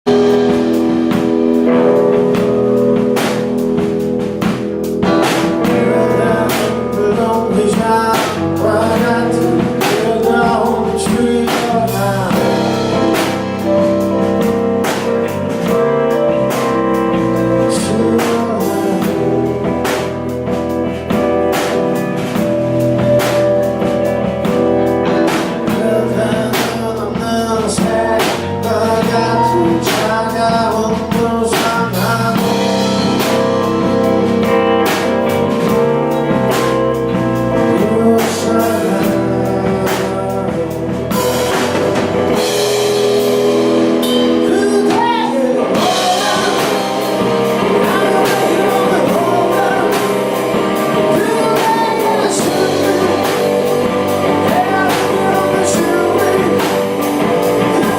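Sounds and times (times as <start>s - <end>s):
rock band playing live: 0.0s - 57.9s.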